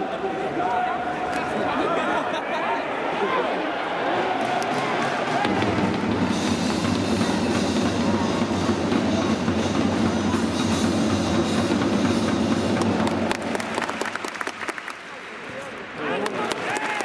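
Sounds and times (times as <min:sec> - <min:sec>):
stadium crowd noise: 0:00.0 - 0:17.0
supporters drumming: 0:04.2 - 0:14.8.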